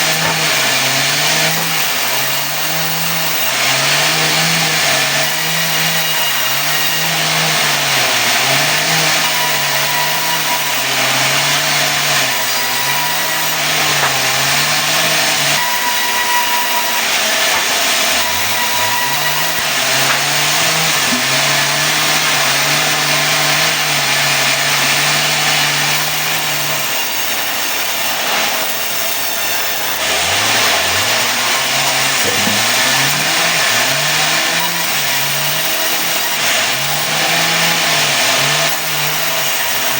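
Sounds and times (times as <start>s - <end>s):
saw cutting wood hiss: 0.0s - 39.9s
sawmill engine running: 0.0s - 39.9s.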